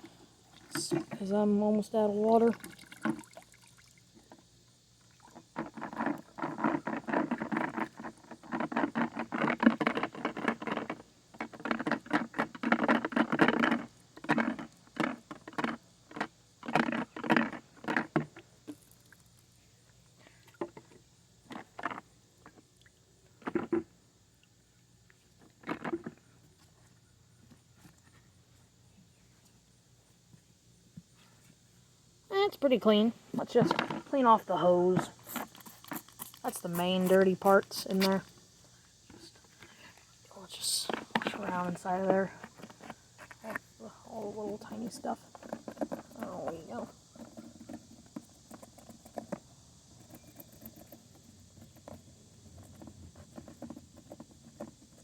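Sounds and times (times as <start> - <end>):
hand washing patter and rubbing: 0.0 - 19.4, 32.7 - 38.4.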